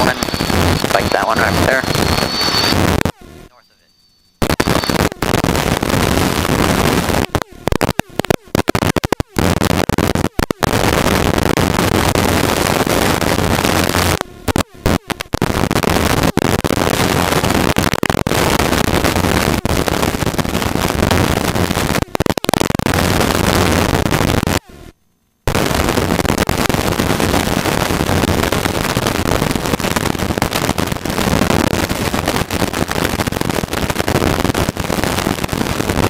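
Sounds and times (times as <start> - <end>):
helicopter engine and rotor noise: 0.0 - 4.9.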